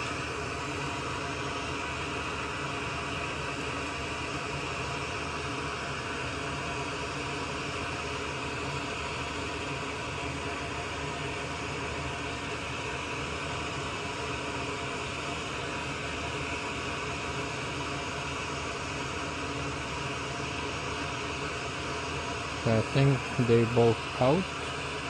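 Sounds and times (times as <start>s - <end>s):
small blower hissing: 0.0s - 25.0s.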